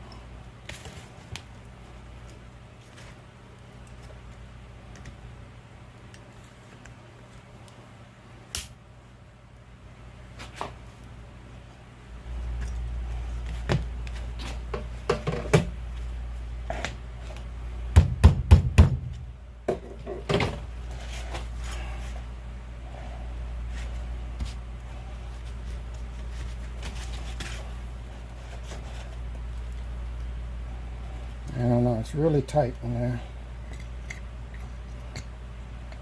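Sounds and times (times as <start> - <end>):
steady low hum: 0.0 - 36.0
sharp knocks: 18.0 - 20.5.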